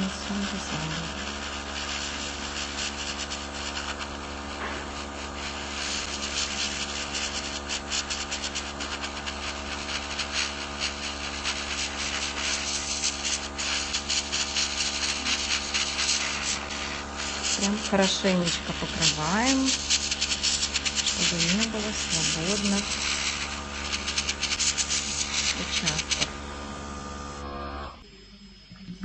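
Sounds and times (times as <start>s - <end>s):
airbrush air hissing: 0.0s - 28.0s
compressor humming: 0.0s - 29.0s.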